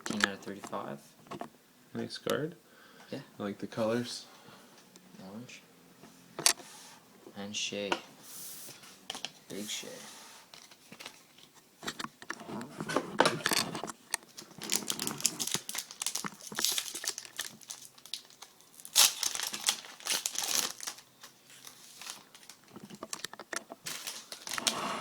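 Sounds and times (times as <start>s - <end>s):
wrapper crackling: 14.4s - 23.0s, 23.8s - 24.8s.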